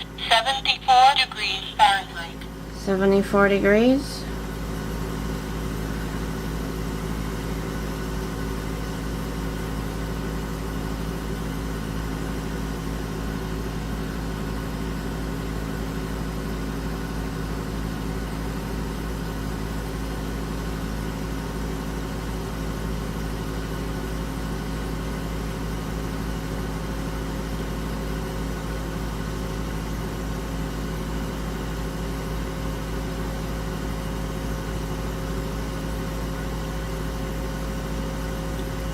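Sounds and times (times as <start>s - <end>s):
air conditioner humming: 0.0s - 8.0s.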